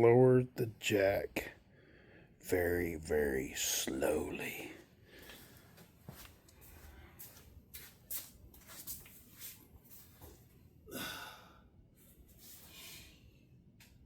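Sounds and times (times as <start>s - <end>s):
person sighing: 10.9s - 11.6s.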